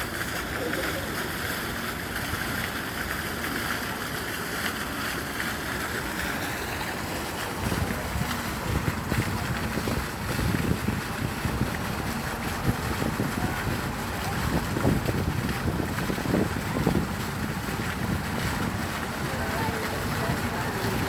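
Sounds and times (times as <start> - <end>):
wind buffeting microphone: 6.9 - 21.0.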